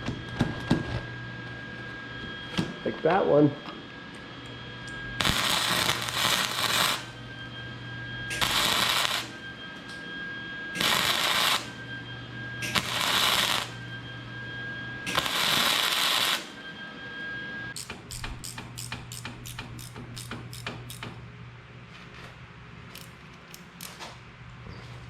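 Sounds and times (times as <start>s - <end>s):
welder humming: 0.0s - 21.2s
welding crackle: 5.2s - 7.1s, 8.3s - 9.4s, 10.8s - 11.8s, 12.6s - 13.8s, 15.1s - 16.6s.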